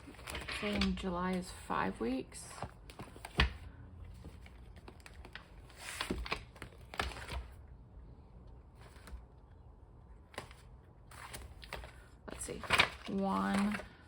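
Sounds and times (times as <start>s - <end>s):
paper pages rustling: 2.6s - 7.6s, 8.7s - 9.2s, 10.2s - 14.0s.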